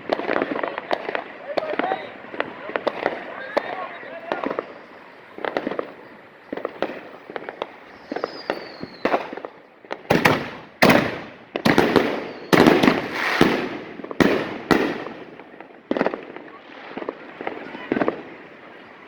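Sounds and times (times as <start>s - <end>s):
loud firework bangs: 0.0s - 18.8s
fireworks crackling: 0.0s - 19.0s
falling whistle: 7.9s - 9.2s.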